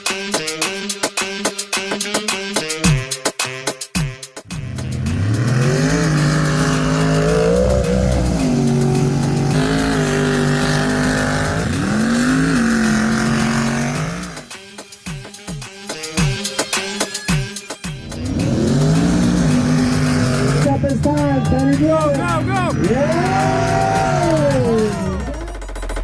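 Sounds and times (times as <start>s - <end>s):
music with steady beat: 0.0s - 26.0s
truck engine revving high: 4.5s - 14.5s, 18.0s - 25.5s.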